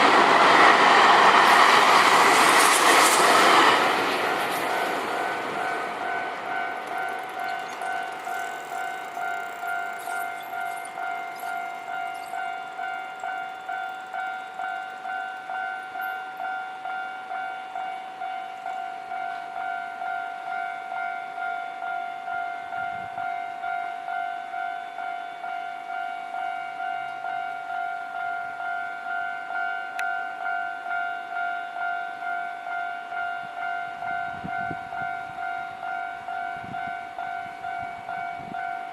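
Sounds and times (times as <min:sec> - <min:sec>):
passing train noise: 0:00.0 - 0:38.9
level crossing bell ringing: 0:05.2 - 0:21.6.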